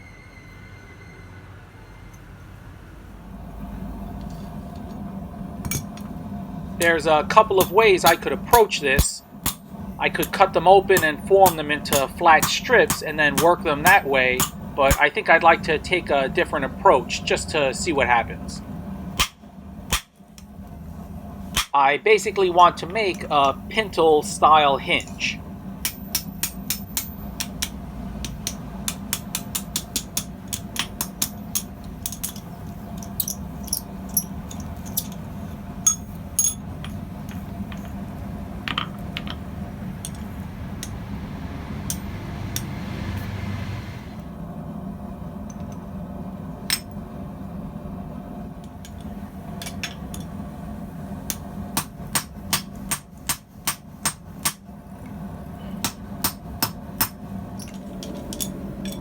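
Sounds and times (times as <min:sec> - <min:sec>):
steady low hum: 0:01.8 - 0:59.0
hammer striking steel on anvil: 0:07.5 - 0:15.1, 0:25.0 - 0:32.4, 0:40.0 - 0:43.6, 0:51.3 - 0:54.6, 0:55.8 - 0:59.0
hiss: 0:40.5 - 0:44.2.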